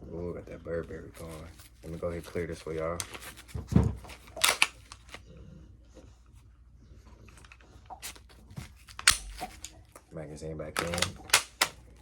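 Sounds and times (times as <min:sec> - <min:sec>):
small handling clicks: 0:04.1 - 0:05.2, 0:10.7 - 0:11.9.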